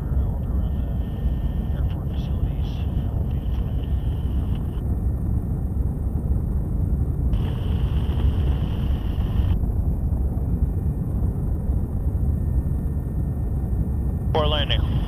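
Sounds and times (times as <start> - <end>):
helicopter rotor and turbine drone: 0.0 - 15.0
radio microphone hiss and tone: 0.2 - 4.8, 7.4 - 9.6.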